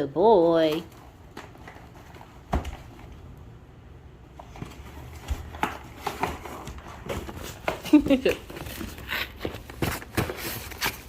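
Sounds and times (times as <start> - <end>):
dog pawing cardboard box: 4.4 - 11.0.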